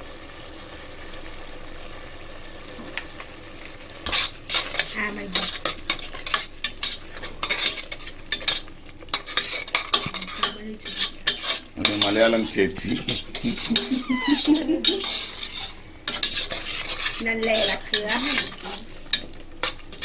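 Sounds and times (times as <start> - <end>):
spices sizzling in a pan: 0.0 - 20.0
spoon scraping a pan: 4.0 - 20.0.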